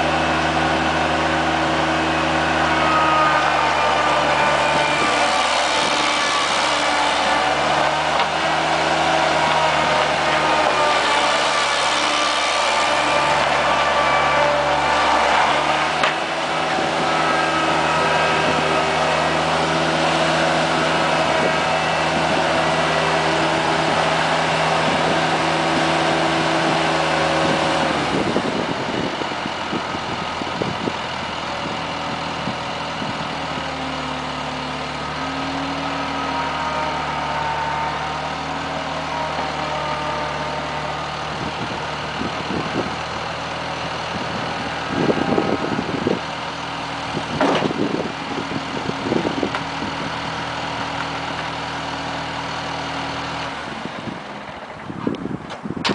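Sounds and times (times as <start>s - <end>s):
skid steer engine running: 0.0s - 55.9s.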